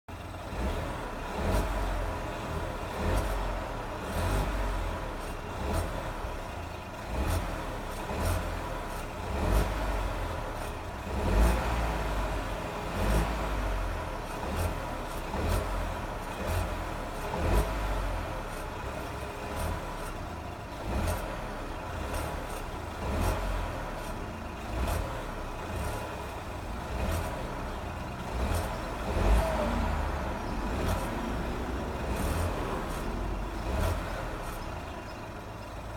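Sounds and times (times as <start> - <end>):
engine grinding noise: 0.1 - 35.9
car engine revving: 0.2 - 35.9.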